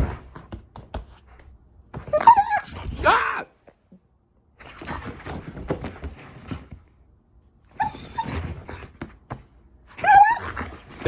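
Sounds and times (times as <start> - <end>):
puppy whining: 2.0 - 3.4, 4.6 - 5.5, 7.7 - 9.0, 9.9 - 11.0
puppy scuffling: 4.6 - 7.0.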